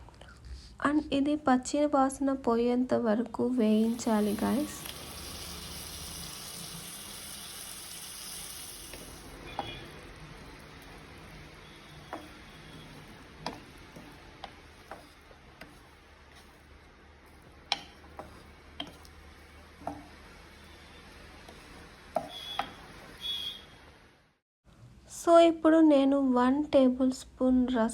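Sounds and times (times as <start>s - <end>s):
paste sizzling in a pan: 3.6s - 24.1s.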